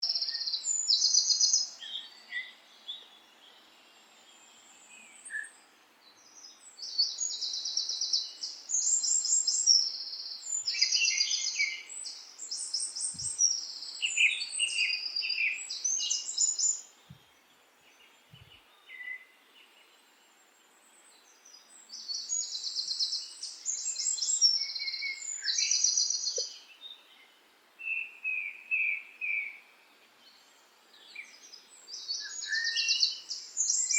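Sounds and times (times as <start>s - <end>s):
faint background hiss: 0.0s - 33.9s
songbird high-pitched trills: 31.1s - 33.9s.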